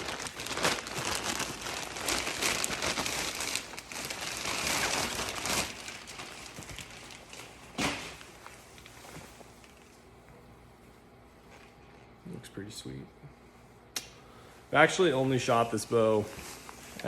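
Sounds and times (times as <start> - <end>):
packaging crinkling: 0.0 - 10.0.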